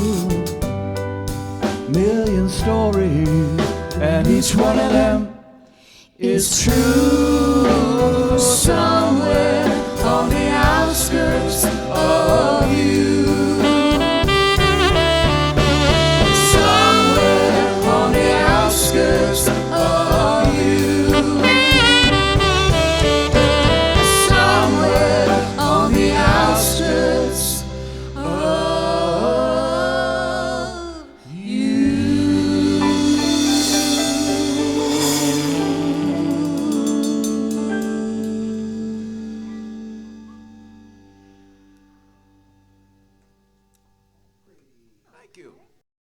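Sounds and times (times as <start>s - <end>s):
rhythm and blues band playing: 0.0s - 5.2s, 6.7s - 30.3s, 31.9s - 41.1s
saxophone lead: 8.7s - 31.2s.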